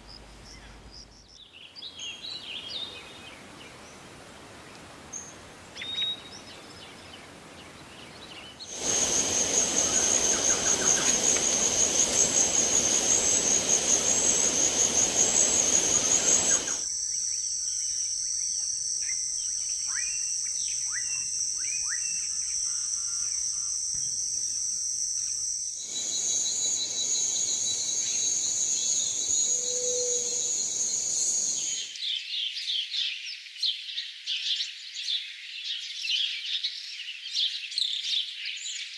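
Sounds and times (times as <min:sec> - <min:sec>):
repeated bird calls: 0:08.5 - 0:16.8
bird whistles and chirps: 0:08.7 - 0:16.8
high insect drone: 0:08.7 - 0:31.9.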